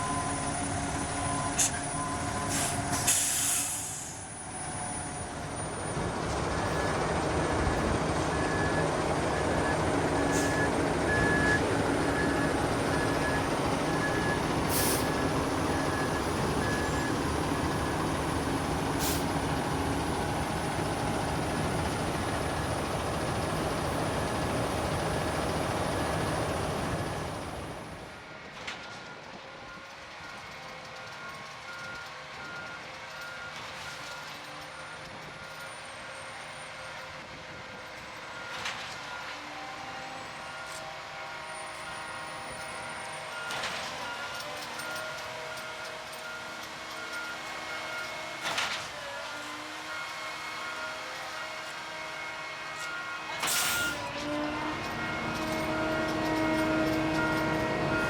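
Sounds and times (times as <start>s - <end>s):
reversing alarm beeping: 0.0s - 28.1s, 53.5s - 58.0s
diesel engine running loudly: 0.0s - 28.2s, 46.8s - 58.0s
air brake hisses: 1.6s - 4.3s, 14.7s - 15.2s, 19.0s - 19.4s, 53.4s - 54.1s.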